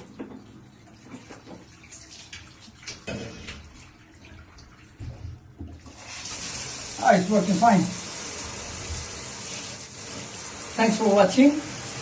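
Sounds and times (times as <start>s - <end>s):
water drips: 0.0s - 9.6s
shower water splashing in bath: 0.0s - 12.0s.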